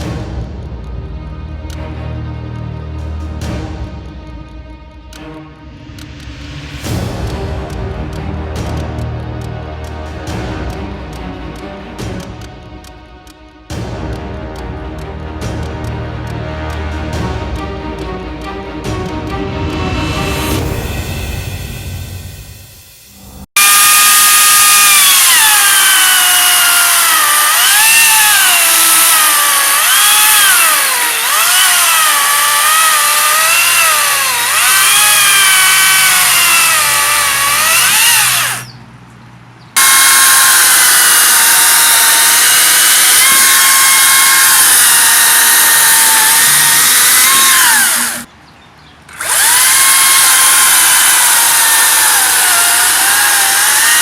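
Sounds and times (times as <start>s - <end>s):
electric chainsaw cutting wood: 23.5s - 38.7s, 39.8s - 48.3s, 49.1s - 54.0s.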